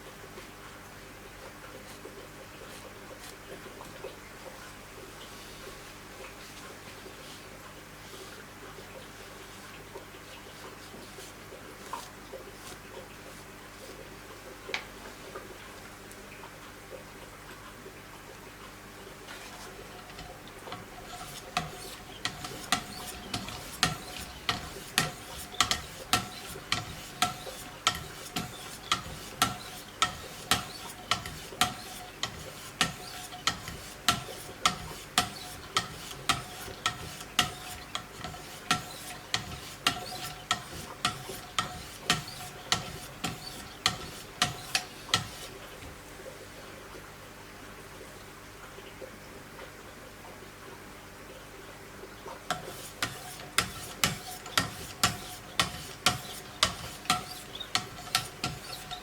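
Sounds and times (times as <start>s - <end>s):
knife sharpening strokes: 21.1s - 45.6s, 52.5s - 59.0s.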